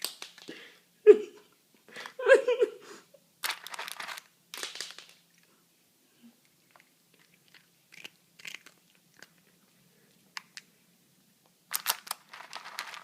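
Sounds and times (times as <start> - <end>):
cat crunching dry food: 3.4 - 5.5, 6.5 - 10.7, 11.7 - 13.0.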